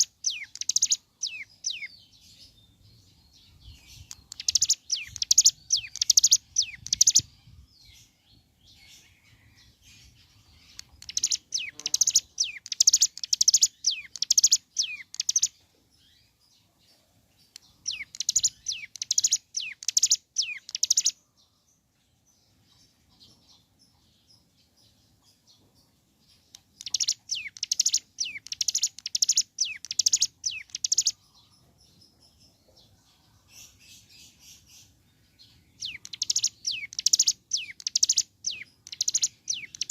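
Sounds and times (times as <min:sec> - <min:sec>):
small bird singing fast notes: 0:00.0 - 0:08.1, 0:09.9 - 0:16.3, 0:17.4 - 0:21.2, 0:26.3 - 0:31.4, 0:33.5 - 0:39.9.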